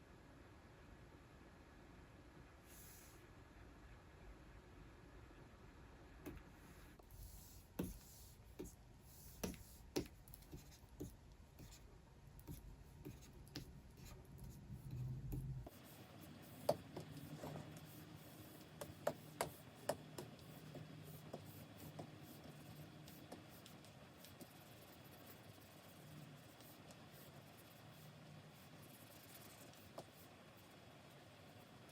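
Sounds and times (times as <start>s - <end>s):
stylus scratching on screen: 7.2s - 30.8s.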